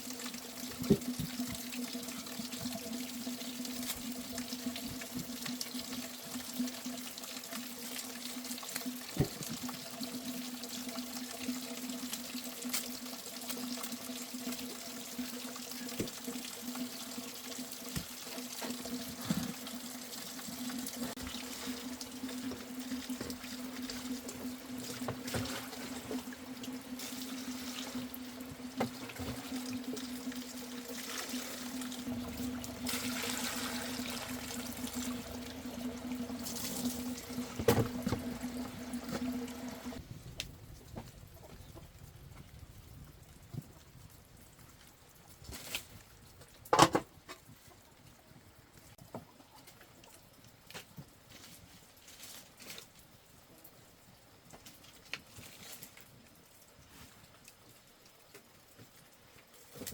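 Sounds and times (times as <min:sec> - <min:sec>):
water running and trickling: 0:00.0 - 0:40.0
low hum: 0:21.2 - 0:40.6.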